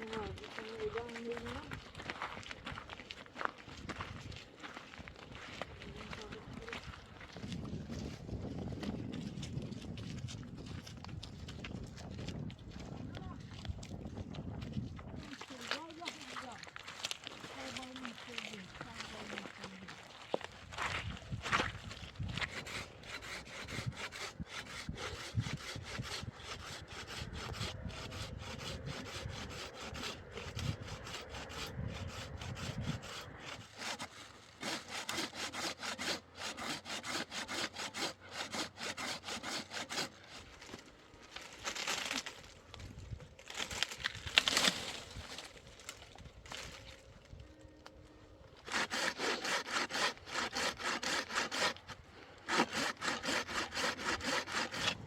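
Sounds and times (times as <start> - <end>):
saw cutting through wood: 22.3 - 42.3, 48.6 - 55.0.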